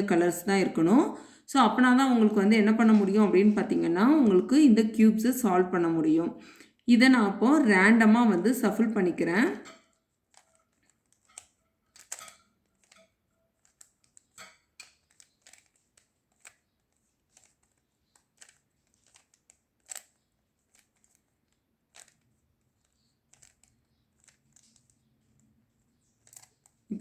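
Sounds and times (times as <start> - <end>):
puzzle cube plastic clicks: 9.6 - 27.0.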